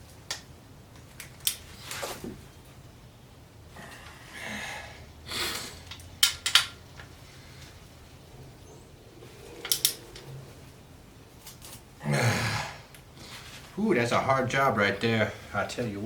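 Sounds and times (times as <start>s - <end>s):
soft scraping and rustling: 1.6s - 2.5s, 9.2s - 11.9s, 13.2s - 13.8s.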